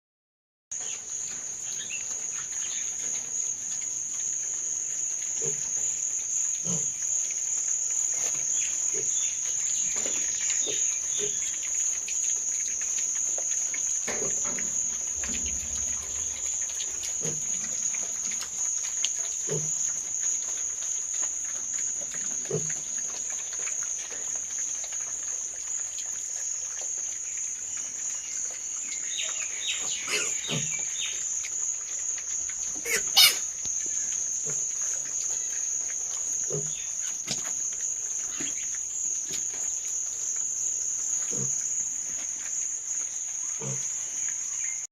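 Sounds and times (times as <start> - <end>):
pigs grunting: 6.6 - 7.0, 8.2 - 26.2, 29.6 - 31.3, 32.5 - 37.5, 41.2 - 41.7, 43.5 - 44.0
pigs squealing: 29.8 - 30.9, 32.7 - 33.6.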